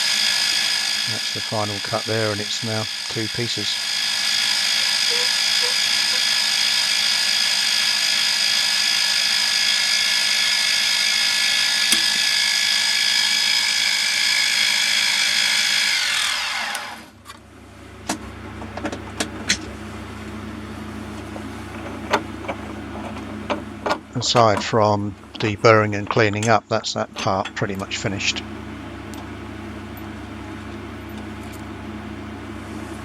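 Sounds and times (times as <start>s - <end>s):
milling machine spindle whine: 0.0s - 17.2s.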